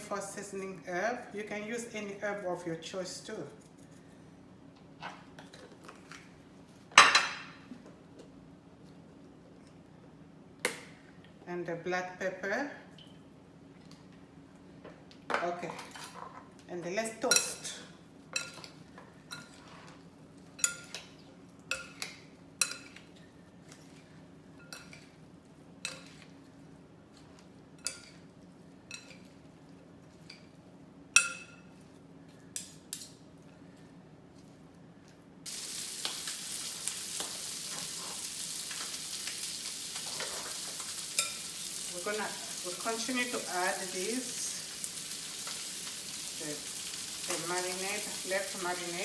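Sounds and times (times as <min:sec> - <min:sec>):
fish sizzling in hot oil: 0:35.5 - 0:49.0
utensils clinking against dishes: 0:40.0 - 0:41.6.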